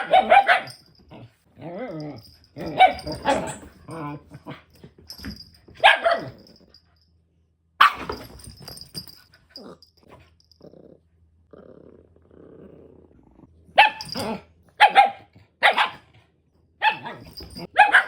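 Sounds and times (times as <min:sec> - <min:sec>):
dog barking: 0:00.0 - 0:00.8, 0:05.8 - 0:06.4, 0:07.8 - 0:08.1, 0:13.8 - 0:14.2, 0:14.8 - 0:16.1, 0:16.8 - 0:18.0
dog growling: 0:01.1 - 0:04.7, 0:09.6 - 0:14.5.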